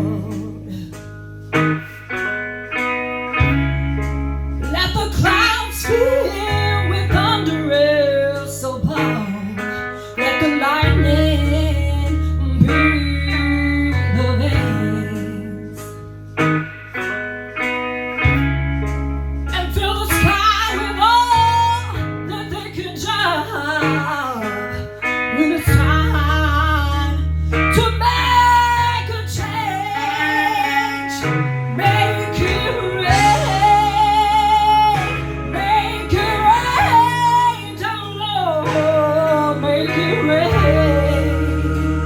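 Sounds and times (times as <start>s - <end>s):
low bass notes: 0.0s - 10.1s, 10.8s - 42.0s
guitar: 0.0s - 42.0s
woman singing wavering notes: 27.8s - 42.0s.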